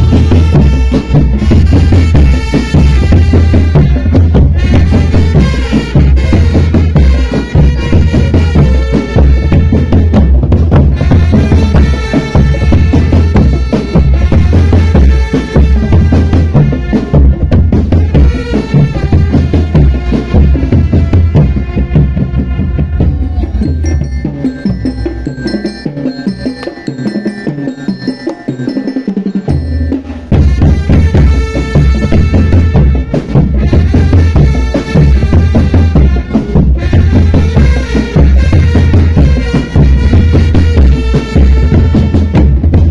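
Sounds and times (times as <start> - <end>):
heavy steady drum beat: 0.0 - 42.9
melodic instruments: 23.2 - 30.6.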